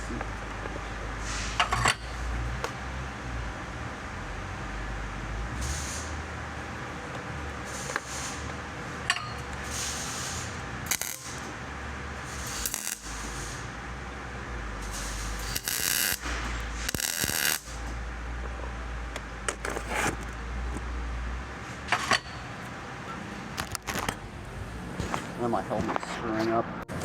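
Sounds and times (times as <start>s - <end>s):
short hiss bursts: 1.2s - 1.7s, 7.7s - 8.5s, 9.6s - 11.4s, 12.3s - 13.7s, 14.8s - 17.8s.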